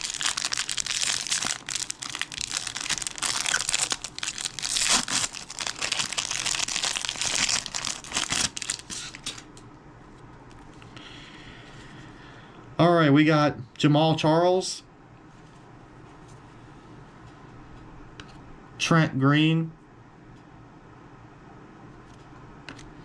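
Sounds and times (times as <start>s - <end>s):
card pack wrapper crinkling: 0.0s - 9.5s.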